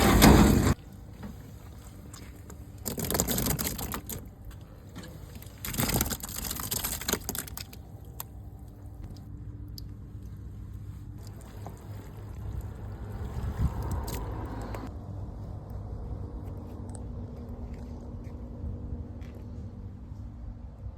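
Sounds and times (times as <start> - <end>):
wet sloshing crushing: 0.0 - 9.3, 10.9 - 14.9.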